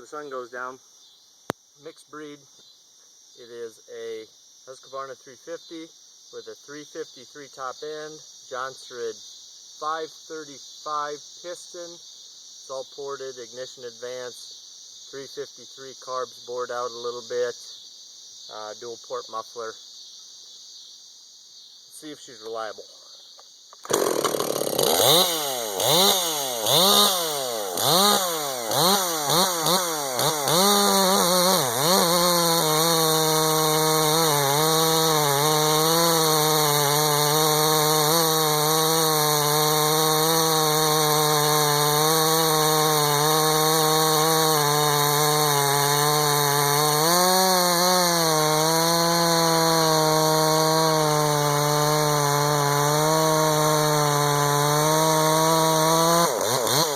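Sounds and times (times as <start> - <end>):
chainsaw cutting wood: 23.4 - 56.9
chainsaw revving: 23.8 - 56.9.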